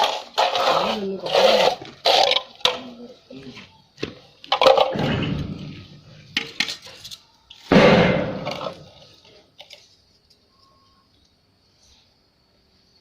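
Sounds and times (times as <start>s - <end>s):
trowel scraping mortar: 0.0s - 3.1s.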